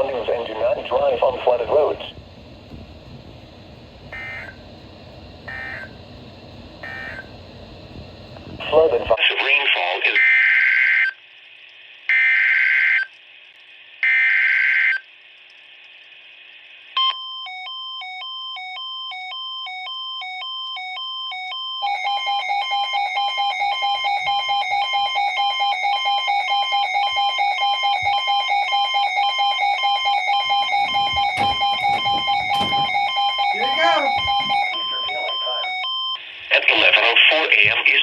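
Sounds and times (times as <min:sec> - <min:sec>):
beeping tone switching pitches: 0:04.1 - 0:04.6, 0:05.5 - 0:06.0, 0:06.8 - 0:07.3, 0:27.3 - 0:36.2
buzzy digital data bursts: 0:04.1 - 0:04.6, 0:05.5 - 0:06.0, 0:06.8 - 0:07.3
steady two-tone attention signal: 0:04.1 - 0:04.6, 0:05.4 - 0:06.0, 0:06.8 - 0:07.3, 0:28.1 - 0:36.2.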